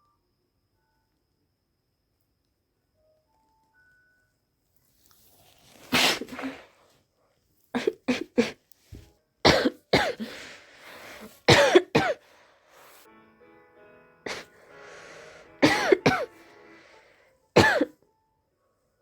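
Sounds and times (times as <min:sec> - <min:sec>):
person sneezing: 0:05.8 - 0:06.8, 0:07.8 - 0:08.6, 0:09.5 - 0:12.2, 0:14.3 - 0:14.5, 0:15.6 - 0:16.4, 0:17.6 - 0:17.9.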